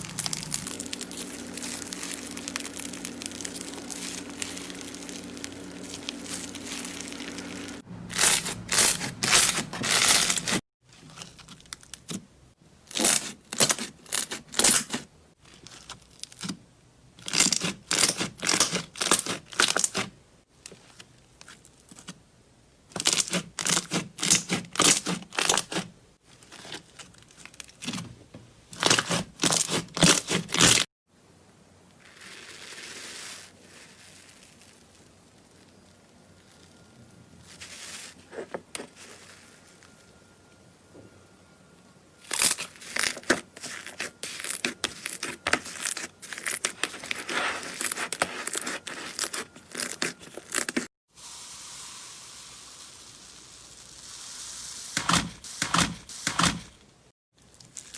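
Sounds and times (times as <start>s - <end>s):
slime squishing: 0.0s - 10.6s.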